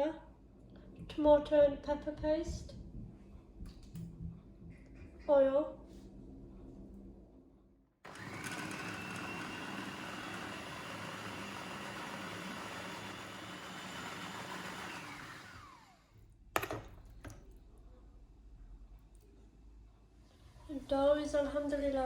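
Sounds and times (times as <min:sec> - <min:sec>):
electric blender running: 0:08.1 - 0:16.7.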